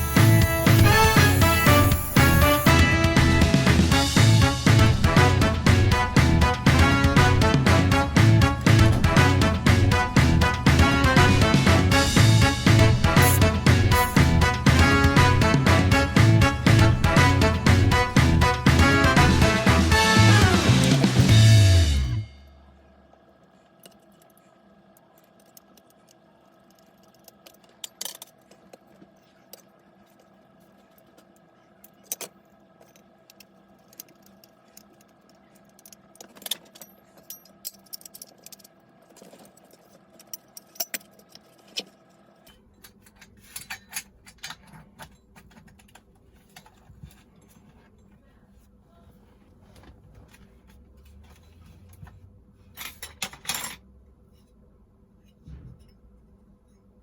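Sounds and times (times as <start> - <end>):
faint steady hum: 21.0 - 57.0
metal tools clinking: 31.9 - 48.2, 50.2 - 54.6.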